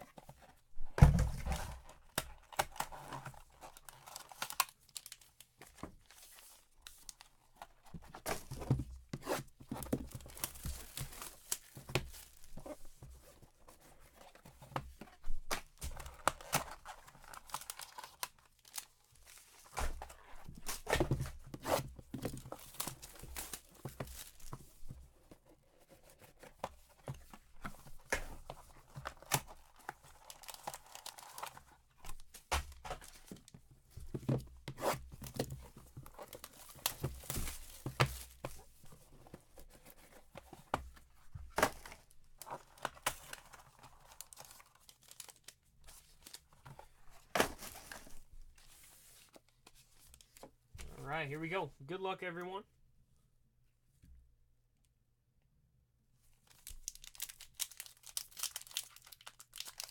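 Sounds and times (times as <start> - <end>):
plastic wrapping tearing and crinkling: 2.4 - 5.4, 29.2 - 31.6, 56.5 - 59.9.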